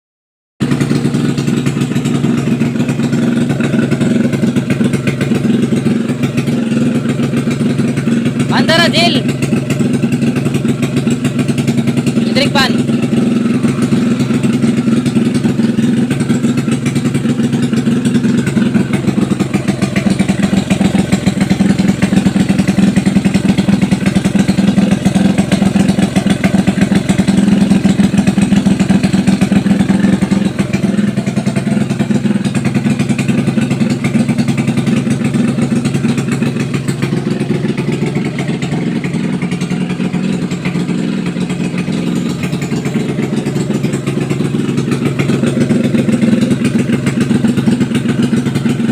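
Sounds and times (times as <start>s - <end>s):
motorcycle engine running: 0.6s - 48.9s.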